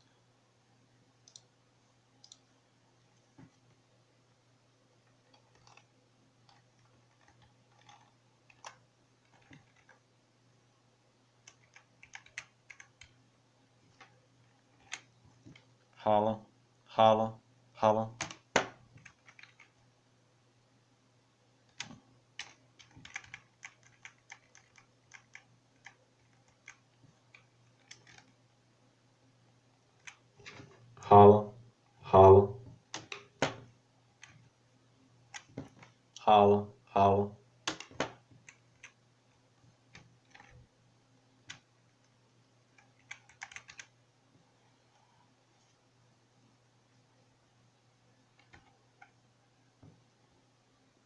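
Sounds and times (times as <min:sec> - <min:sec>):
faint low hum: 0:00.0 - 0:51.0
keyboard typing clicks: 0:01.2 - 0:01.5, 0:02.2 - 0:02.4, 0:05.3 - 0:05.9, 0:06.5 - 0:10.0, 0:11.4 - 0:13.2, 0:18.1 - 0:19.7, 0:21.7 - 0:28.3, 0:37.7 - 0:39.0, 0:39.9 - 0:40.6, 0:42.8 - 0:43.9, 0:48.4 - 0:49.1.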